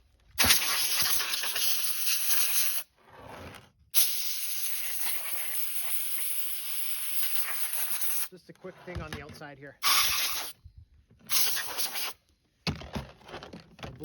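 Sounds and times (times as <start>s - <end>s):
compressed air blow gun hissing: 0.4s - 2.9s, 4.0s - 8.3s, 9.8s - 10.6s, 11.3s - 12.2s.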